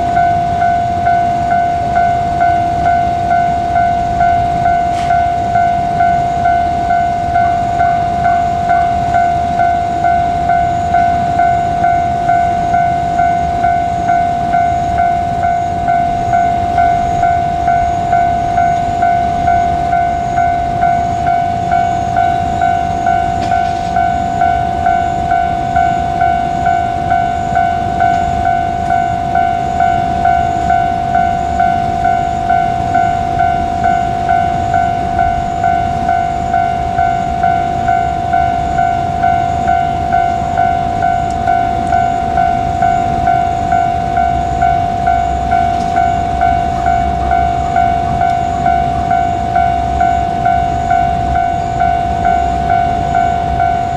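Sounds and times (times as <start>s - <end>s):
level crossing warning bell ringing: 0.0s - 53.9s.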